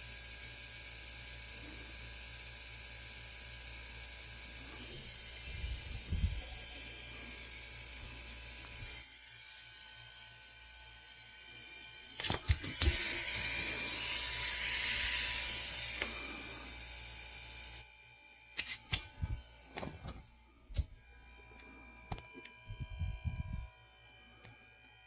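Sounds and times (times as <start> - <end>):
air compressor hissing and humming: 0.0 - 24.2
sharp clicks and knocks: 12.2 - 13.0.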